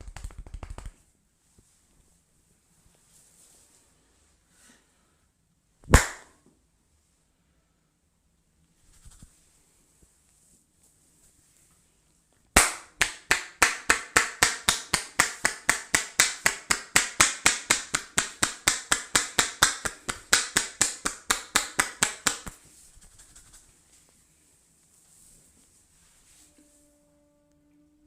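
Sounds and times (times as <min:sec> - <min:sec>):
rapid slapping claps on head: 0:00.0 - 0:01.0, 0:05.8 - 0:06.4, 0:12.6 - 0:23.6.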